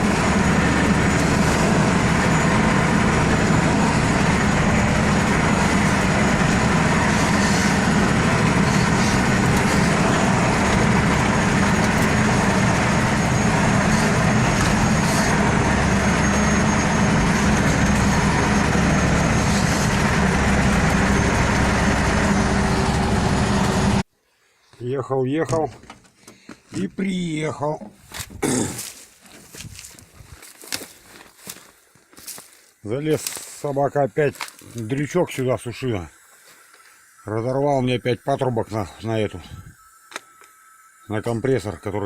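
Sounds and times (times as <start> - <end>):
diesel engine droning: 0.0 - 24.1.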